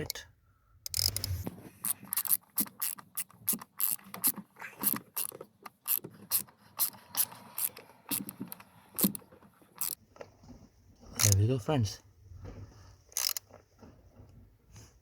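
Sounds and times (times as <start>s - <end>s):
ratchet clicking: 0.9s - 9.2s, 9.8s - 10.0s, 11.2s - 11.4s, 13.1s - 13.4s.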